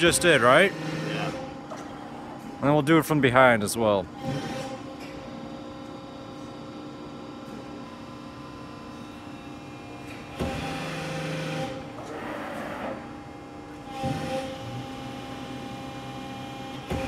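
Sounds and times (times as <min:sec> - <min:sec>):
hydraulic pump humming: 0:00.0 - 0:02.6
machine whirring: 0:00.0 - 0:02.8, 0:07.4 - 0:17.0.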